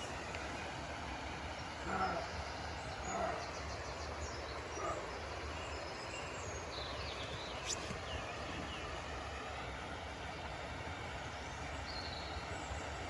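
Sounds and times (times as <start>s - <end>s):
small birds chirping: 1.6s - 8.9s.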